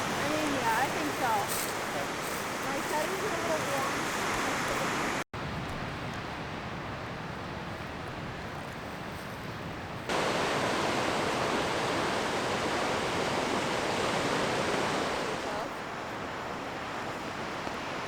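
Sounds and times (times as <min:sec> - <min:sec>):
ocean surf rushing: 0:00.0 - 0:05.3, 0:10.1 - 0:18.0.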